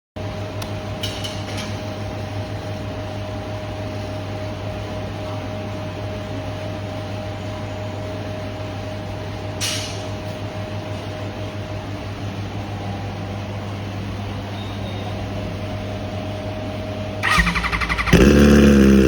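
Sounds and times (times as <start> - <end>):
motorcycle engine idling: 17.2 - 19.0.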